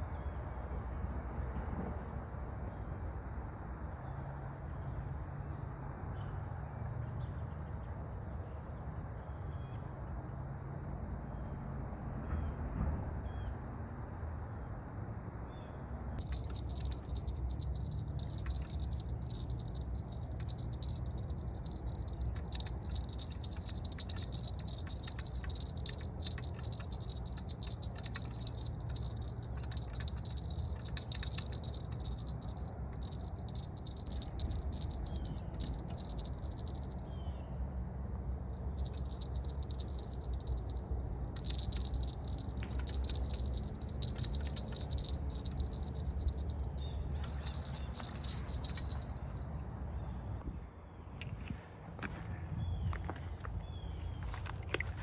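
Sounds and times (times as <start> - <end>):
insects trilling: 13.2 - 55.0
high-pitched insect chirring: 16.2 - 37.6, 38.2 - 50.4
low steady hum: 16.2 - 55.0.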